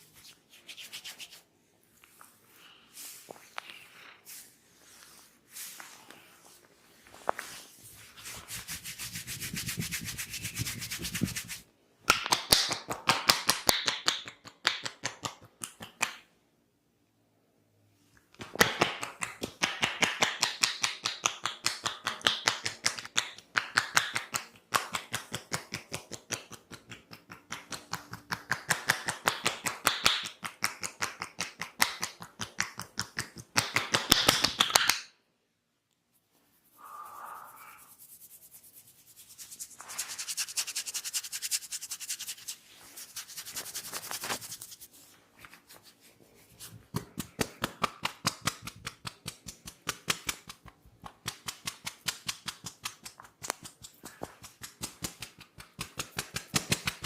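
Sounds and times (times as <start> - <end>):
soft rubbing and rustling: 0.0 - 11.7, 36.0 - 47.4
hands tapping on head: 18.4 - 35.0, 46.9 - 57.0.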